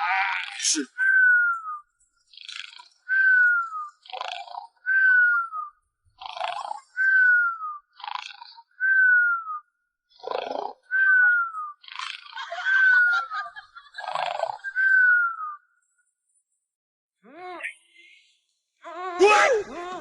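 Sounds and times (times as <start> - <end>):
person snoring heavily: 6.2 - 7.1.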